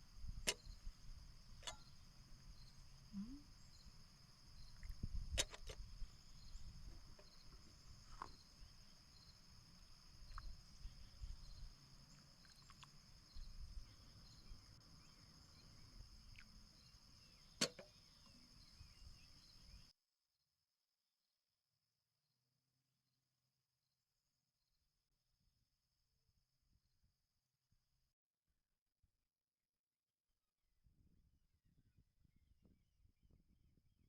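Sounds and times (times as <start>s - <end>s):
sharp clicks and snaps: 5.3s - 5.8s.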